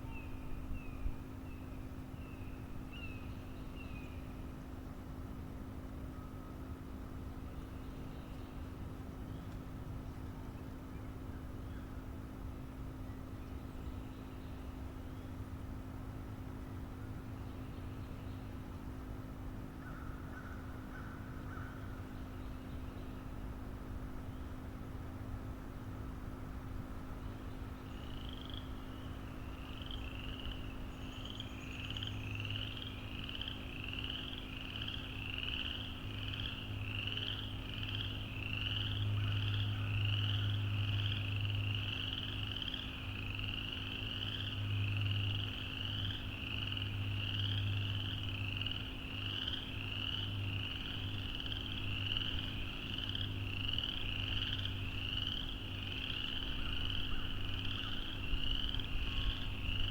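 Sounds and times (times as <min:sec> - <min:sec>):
chorus of small frogs calling: 0:28.0 - 0:59.9.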